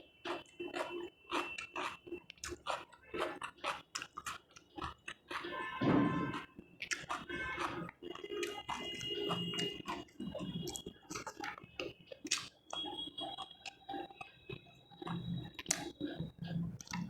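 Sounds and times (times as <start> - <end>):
person chewing food: 0.0 - 17.0
wet mouth smacks: 12.3 - 12.9.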